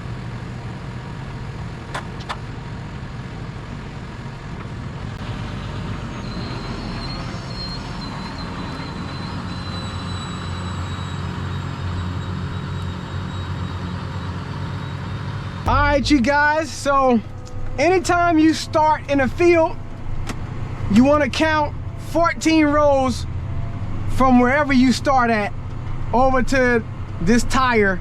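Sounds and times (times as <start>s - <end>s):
tractor engine running: 0.0s - 28.0s
thin high whine: 15.7s - 20.2s.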